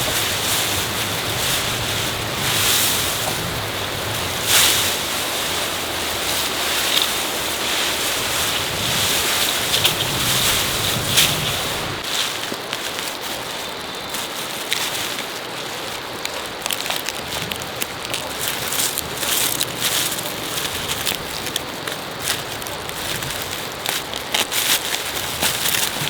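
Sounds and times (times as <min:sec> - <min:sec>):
steady rushing noise: 0:00.0 - 0:12.1.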